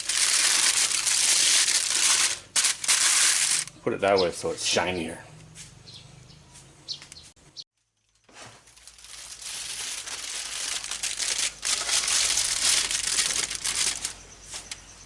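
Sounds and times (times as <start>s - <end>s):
aluminium foil crinkling: 0.0s - 3.7s, 7.8s - 14.9s.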